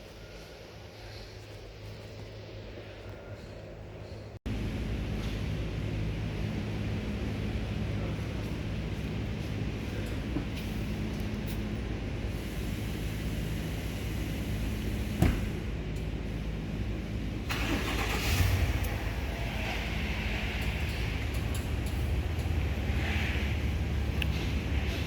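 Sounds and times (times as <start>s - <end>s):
car engine idling: 12.0s - 25.0s.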